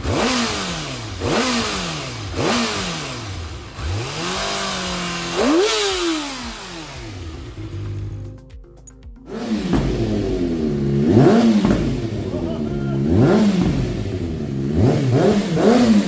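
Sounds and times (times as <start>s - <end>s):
motorcycle engine revving: 0.0s - 8.5s, 9.2s - 16.0s.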